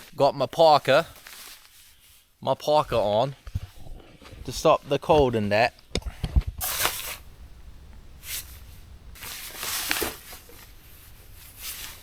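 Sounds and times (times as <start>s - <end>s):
fabric rustling: 0.9s - 3.0s, 8.2s - 12.0s.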